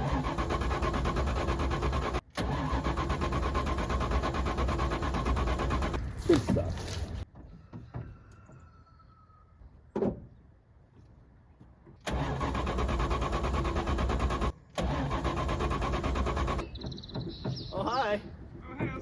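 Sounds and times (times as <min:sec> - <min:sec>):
car starter cranking engine: 0:00.0 - 0:06.1, 0:12.0 - 0:16.7.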